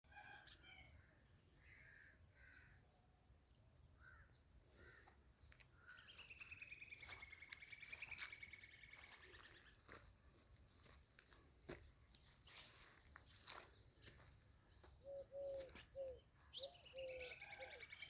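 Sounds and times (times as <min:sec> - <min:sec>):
short bird calls: 0:15.0 - 0:18.0.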